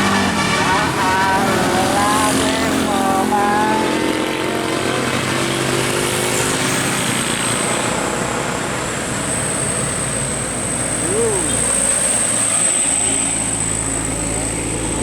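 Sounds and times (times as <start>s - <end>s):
musical air horn melody: 0.0s - 4.6s
bus engine: 0.0s - 15.0s
traffic going by: 0.0s - 15.0s.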